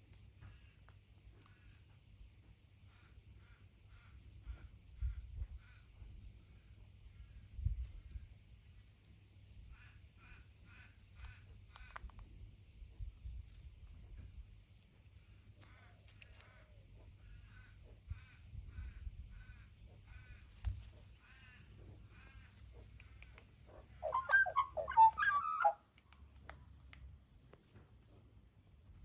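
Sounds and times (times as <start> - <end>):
magpie calling: 24.0 - 25.8
magpie warbling: 24.0 - 25.8.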